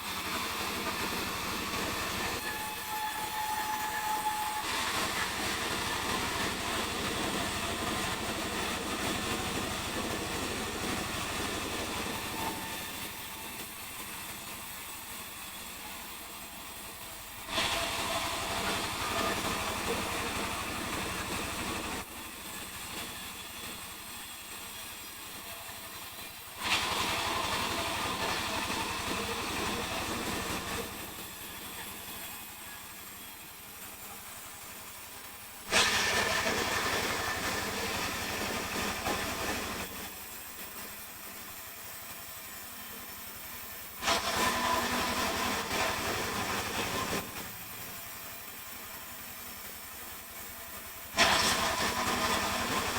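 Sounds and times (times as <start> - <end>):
sawmill saw cutting wood: 0.0 - 52.9.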